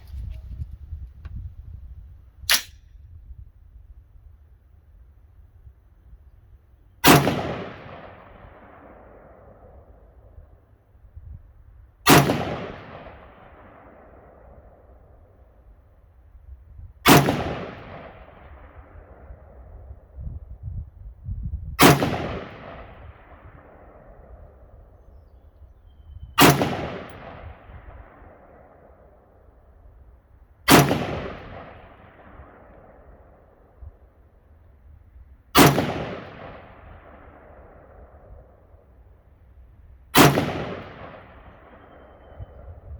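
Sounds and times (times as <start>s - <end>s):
rifle shots with echo: 2.5s - 2.8s, 7.0s - 10.4s, 12.0s - 15.4s, 17.0s - 20.2s, 21.8s - 25.2s, 26.2s - 29.7s, 30.7s - 34.1s, 35.5s - 39.0s, 40.1s - 42.9s.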